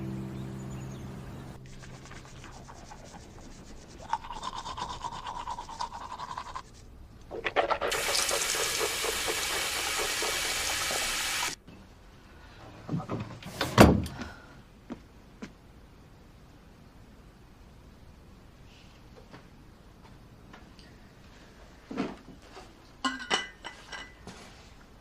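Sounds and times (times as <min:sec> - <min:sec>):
running water gushing: 0:07.4 - 0:11.6.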